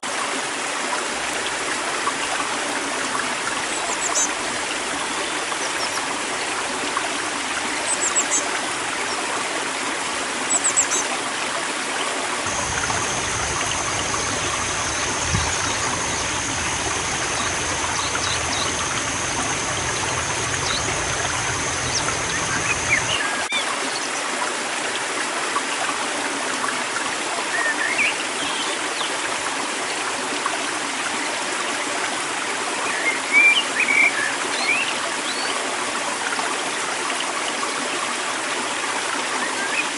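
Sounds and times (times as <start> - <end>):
stream running: 0.0 - 39.9
small birds chirping: 12.5 - 23.2
thin high whine: 12.5 - 23.2.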